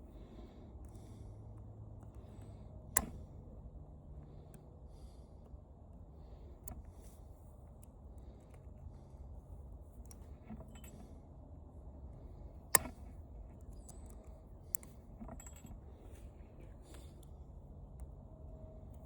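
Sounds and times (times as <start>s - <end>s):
low background rumble: 0.0s - 19.0s
sharp click: 2.9s - 3.3s, 12.7s - 16.2s
metallic clinks of tools: 10.5s - 11.0s, 14.8s - 16.3s.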